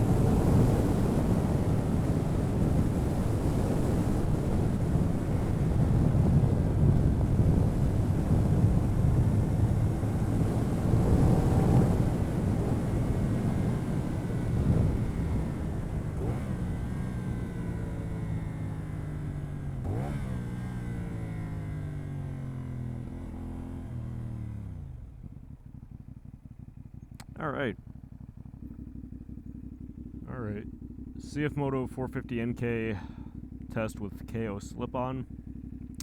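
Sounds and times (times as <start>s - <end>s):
wind noise: 0.0s - 16.6s
motorcycle engine: 0.0s - 36.0s.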